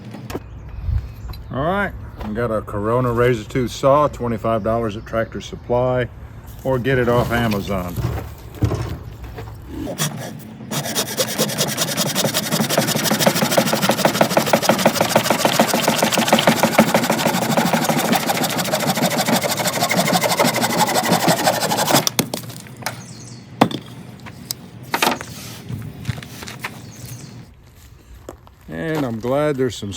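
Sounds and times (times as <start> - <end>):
hand saw cutting log: 9.7 - 22.2
sharp knocks: 11.5 - 18.4.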